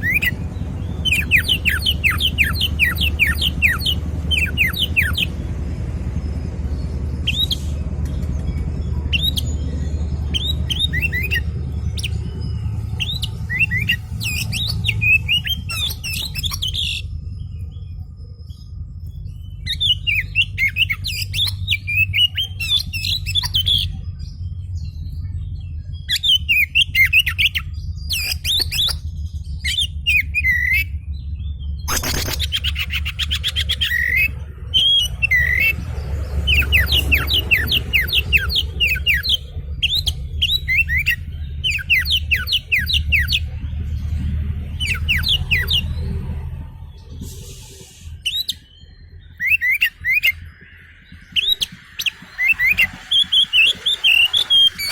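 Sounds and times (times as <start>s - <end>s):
magpie-robin singing whistles: 0.0s - 5.4s, 7.1s - 17.7s, 19.2s - 24.0s, 26.0s - 29.0s, 29.6s - 30.9s, 31.8s - 43.5s, 44.7s - 46.0s, 47.4s - 54.9s
steady low hum: 0.0s - 54.9s
buzzy bird rattle: 31.9s - 32.9s.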